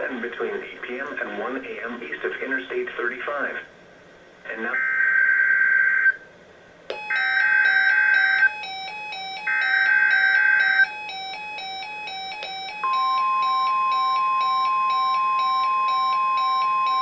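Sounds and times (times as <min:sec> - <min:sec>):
beeping electronic melody: 0:06.9 - 0:17.0
steady single-pitch alert tone: 0:06.9 - 0:17.0.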